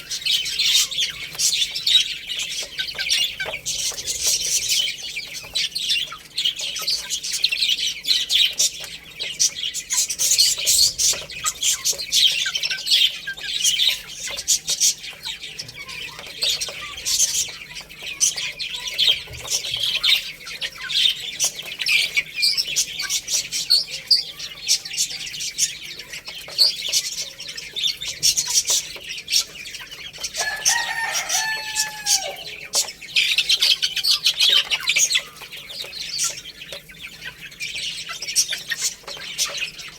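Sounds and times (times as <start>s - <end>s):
baby chicks chirping: 0.0s - 39.9s
lower longer chick call: 30.4s - 32.5s.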